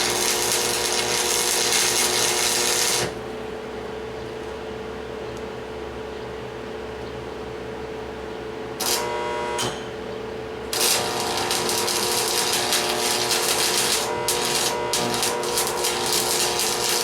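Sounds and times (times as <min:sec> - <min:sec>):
power tool on metal: 0:08.8 - 0:09.8, 0:10.8 - 0:17.0
steady hum: 0:10.4 - 0:17.0.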